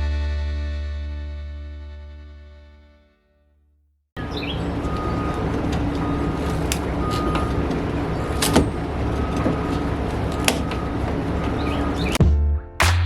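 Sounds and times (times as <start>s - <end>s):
steady mechanical hum: 4.2s - 12.2s.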